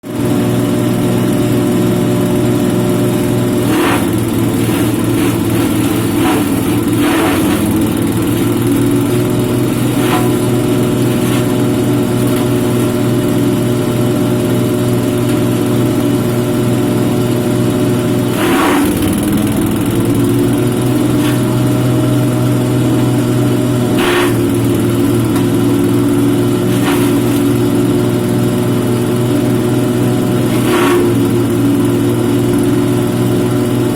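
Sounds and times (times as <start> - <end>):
grass-chopper machine running: 0.0 - 33.9
blades chopping grass: 3.0 - 14.2, 18.2 - 32.8.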